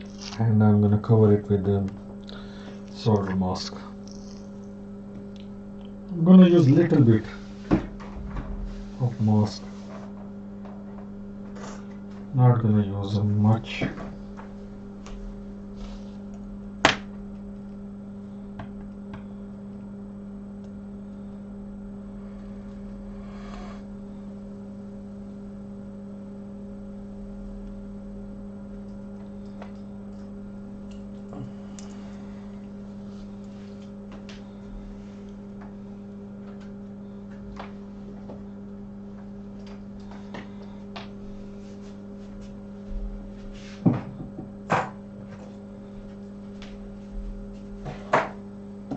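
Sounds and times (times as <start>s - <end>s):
low electrical hum: 0.0s - 48.9s.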